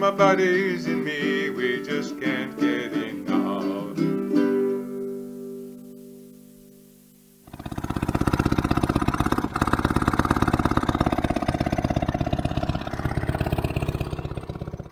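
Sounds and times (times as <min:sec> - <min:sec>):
outboard motor running: 0:07.5 - 0:14.9.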